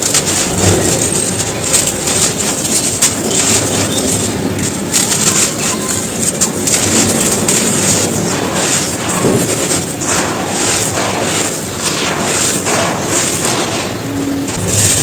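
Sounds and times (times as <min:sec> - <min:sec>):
bricks crumbling and crunching: 0:00.0 - 0:11.8.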